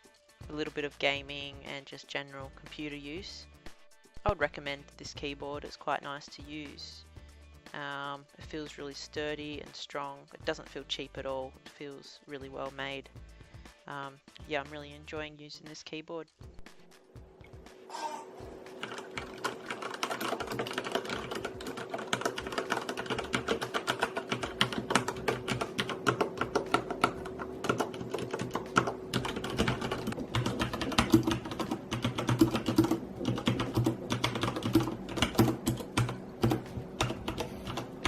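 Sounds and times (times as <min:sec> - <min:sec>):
mechanical keyboard typing: 0:18.8 - 0:38.0.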